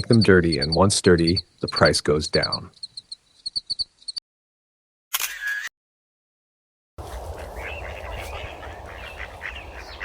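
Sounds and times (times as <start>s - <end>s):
ducks quacking: 7.0s - 10.0s.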